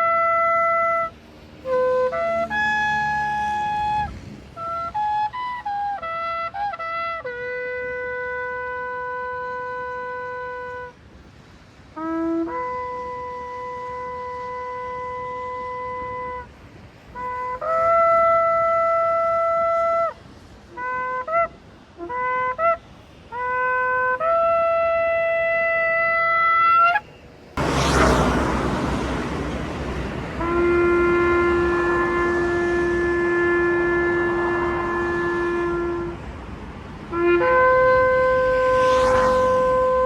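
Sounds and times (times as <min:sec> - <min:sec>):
shofar blasts: 0:20.8 - 0:36.2, 0:37.1 - 0:40.0
loud rushing noise: 0:27.5 - 0:32.8, 0:38.2 - 0:40.0.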